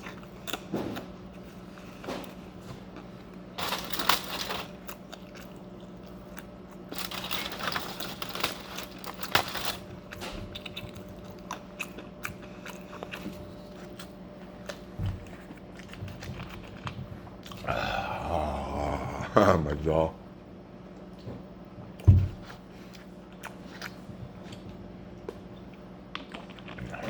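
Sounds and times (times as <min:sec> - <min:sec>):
chewing and crunching food: 0:00.0 - 0:19.2, 0:20.9 - 0:27.0.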